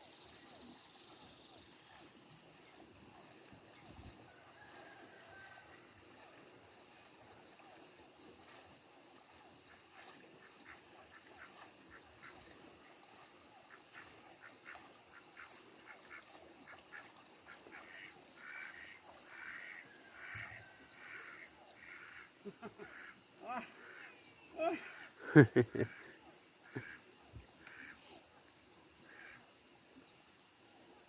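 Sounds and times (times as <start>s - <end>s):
high insect buzz: 6.9s - 31.0s.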